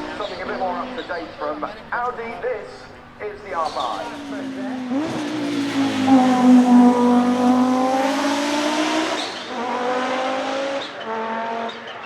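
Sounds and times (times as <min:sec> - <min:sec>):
race car engine under load: 0:00.0 - 0:12.0.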